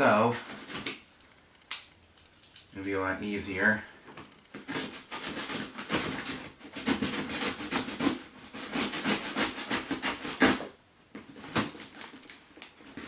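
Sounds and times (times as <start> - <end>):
knife slicing cardboard: 4.6 - 10.7.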